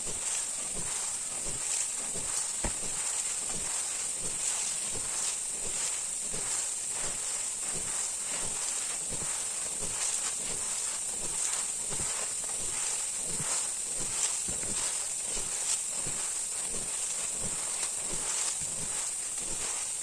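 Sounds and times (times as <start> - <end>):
rustling and crackling: 0.0 - 20.0
steady high-pitched hiss: 0.0 - 20.0.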